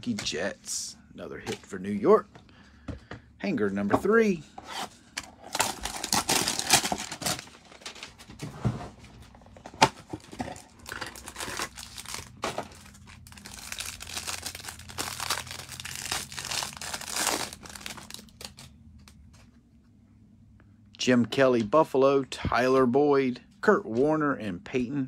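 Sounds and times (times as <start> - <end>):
card packs crinkling: 5.3 - 8.4, 9.2 - 18.8
packaging tearing: 5.4 - 8.0, 10.2 - 18.7.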